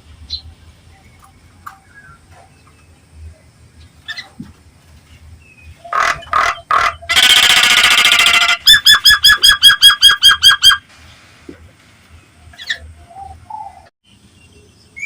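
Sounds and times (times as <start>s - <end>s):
myna calling: 5.8s - 10.8s
myna rattling trill: 5.9s - 10.8s.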